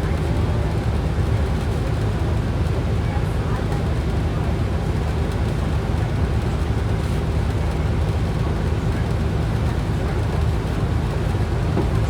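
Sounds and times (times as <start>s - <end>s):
bus engine drone: 0.0s - 12.0s
road noise: 10.4s - 12.0s.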